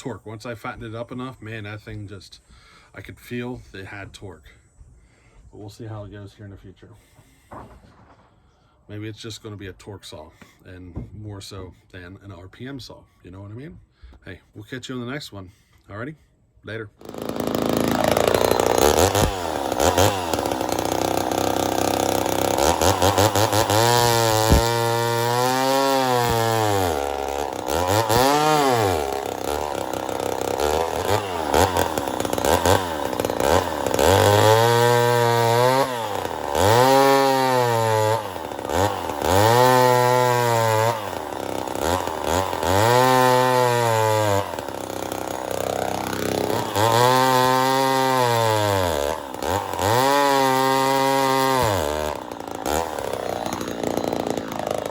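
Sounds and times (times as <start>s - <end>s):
chainsaw revving: 17.0s - 54.9s.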